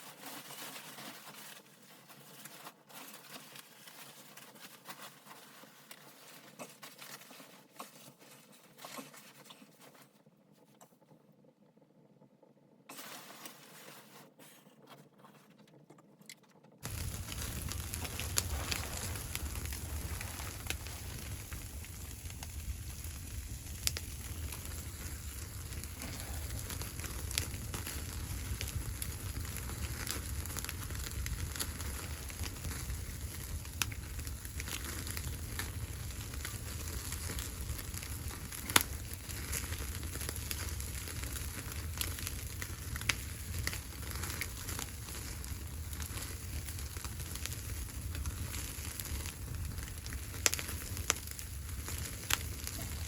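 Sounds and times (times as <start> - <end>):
low rumble: 16.8 - 34.3
sharp pops of fire: 16.8 - 53.0
wood fire crackling: 16.8 - 53.0.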